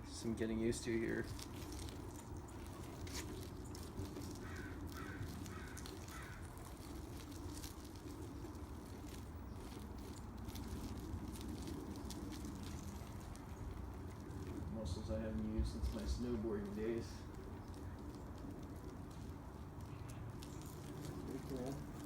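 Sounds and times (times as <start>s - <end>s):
low outdoor rumble: 0.0s - 22.0s
bird calling: 1.7s - 9.8s.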